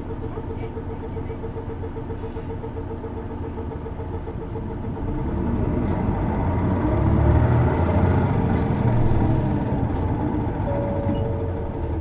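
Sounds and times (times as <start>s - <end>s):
bus diesel engine accelerating: 0.0s - 12.0s.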